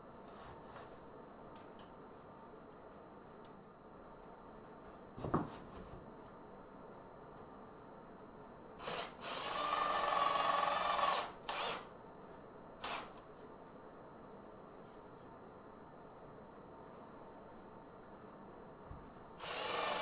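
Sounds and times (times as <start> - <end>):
knock: 5.2 - 5.6
power drill driving screws: 8.8 - 11.8, 19.4 - 20.0.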